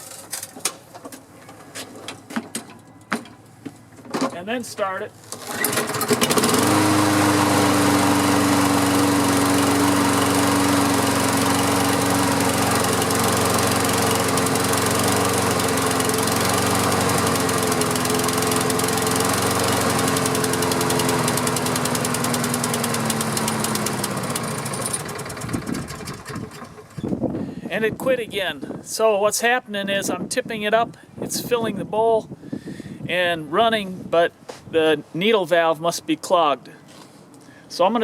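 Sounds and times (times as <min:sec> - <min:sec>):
lawn mower engine running: 0:05.2 - 0:27.6.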